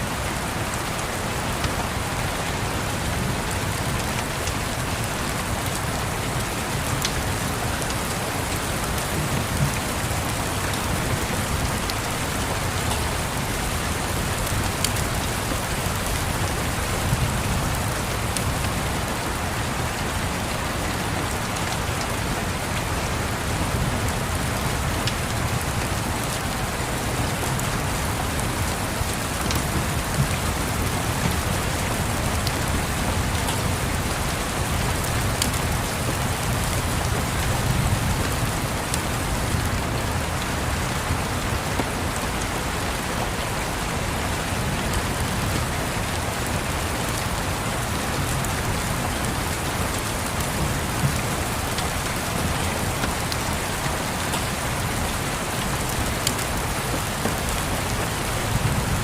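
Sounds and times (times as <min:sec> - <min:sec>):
rain pattering: 0:00.0 - 0:59.0
wood fire crackles: 0:24.3 - 0:40.1.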